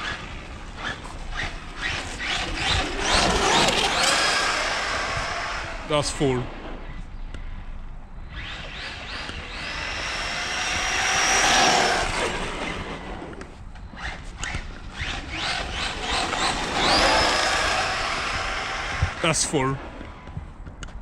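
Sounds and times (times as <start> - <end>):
electric motor whining: 0.0 - 5.9, 8.2 - 19.2.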